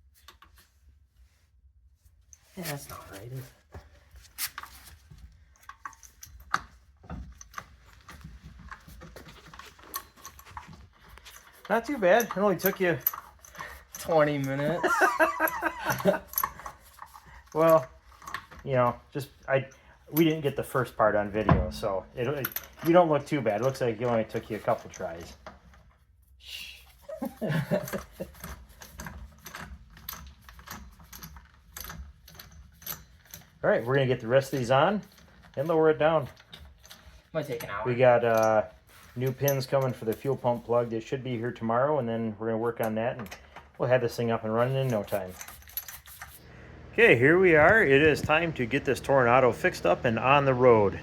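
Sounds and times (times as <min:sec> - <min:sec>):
wheel clicks and knocks: 0:05.8 - 0:19.5, 0:47.0 - 0:51.0.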